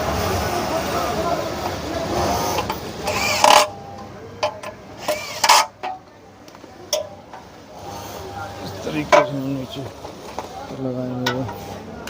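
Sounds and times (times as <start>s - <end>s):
steady background noise: 0.0s - 12.0s.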